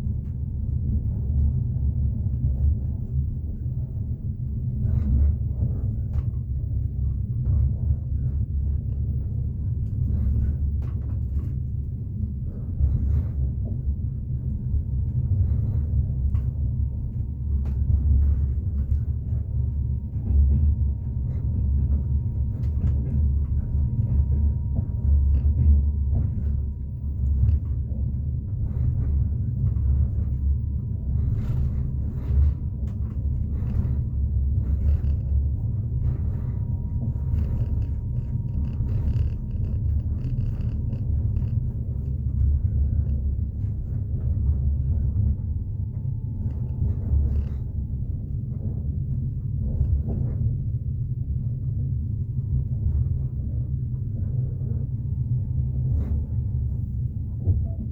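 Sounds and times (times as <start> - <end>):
train wheels rumbling on rails: 0.0 - 57.9.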